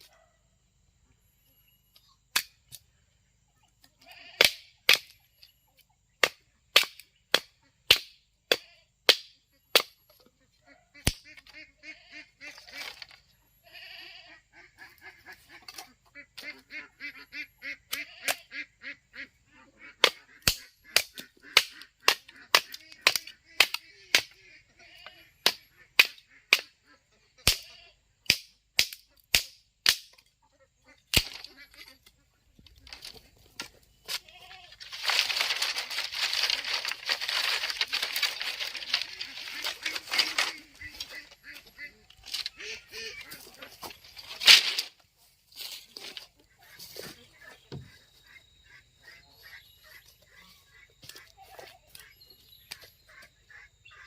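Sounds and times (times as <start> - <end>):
ducks quacking: 9.5 - 28.2, 30.4 - 54.0.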